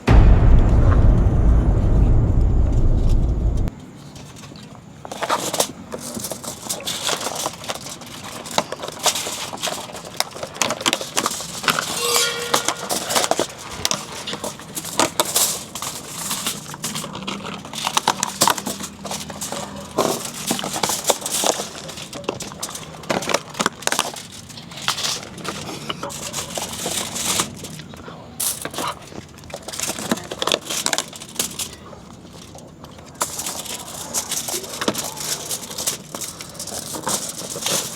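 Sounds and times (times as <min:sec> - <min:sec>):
heavy deep intro sound: 0:00.0 - 0:03.7.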